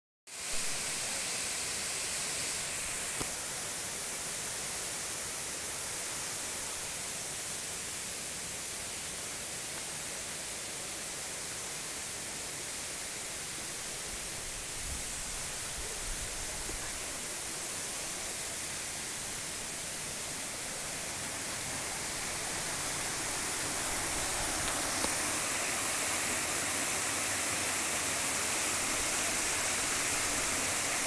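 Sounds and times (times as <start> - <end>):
waterfall rushing: 10.4 - 31.0.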